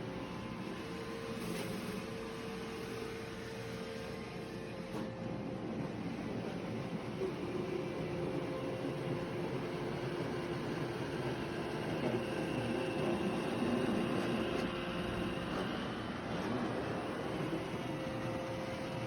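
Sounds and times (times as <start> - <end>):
robot vacuum whirring: 6.2 - 19.0.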